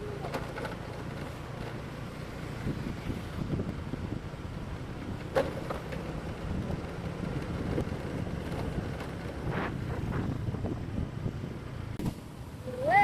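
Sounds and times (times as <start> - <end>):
road noise of moving traffic: 0.0 - 13.0
wind buffeting microphone: 2.4 - 5.4, 6.0 - 12.8.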